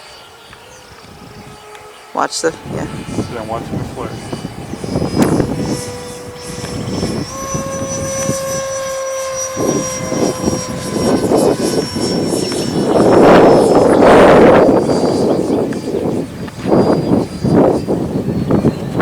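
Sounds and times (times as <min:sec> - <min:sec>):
jet fan whine: 0:00.0 - 0:19.0
wind noise bursts: 0:00.6 - 0:19.0.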